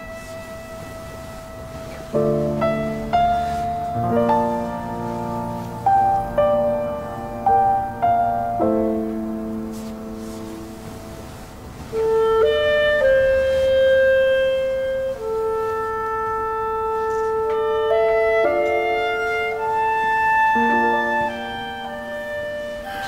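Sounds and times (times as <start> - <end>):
slow clarinet-like woodwind melody: 0.0 - 23.0.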